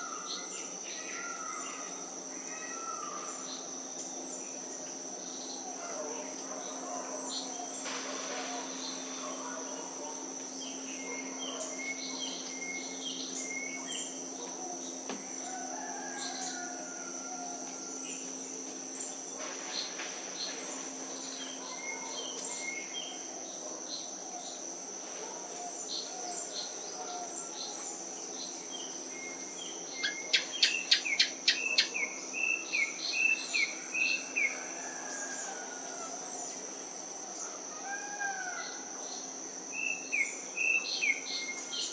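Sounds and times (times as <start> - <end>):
high-pitched insect drone: 0.0 - 24.6
birds chirping and calling: 29.6 - 33.8.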